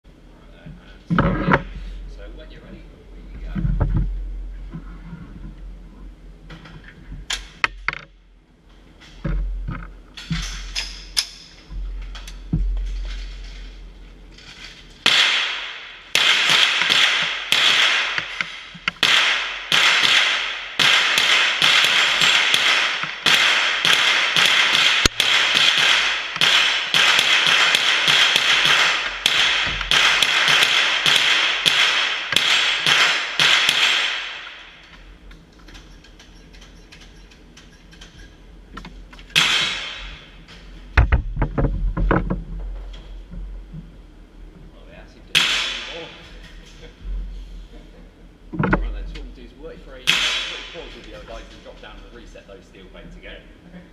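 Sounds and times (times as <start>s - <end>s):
rifle shots ringing: 15.0s - 34.8s, 39.3s - 40.3s, 45.3s - 46.1s, 50.0s - 50.9s
low thumps: 39.5s - 44.0s.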